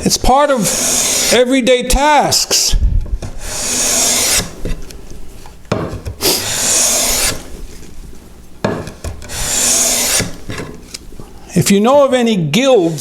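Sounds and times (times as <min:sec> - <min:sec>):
hand plane cutting wood: 0:00.2 - 0:01.5, 0:03.2 - 0:04.8, 0:05.8 - 0:07.9, 0:08.7 - 0:10.9.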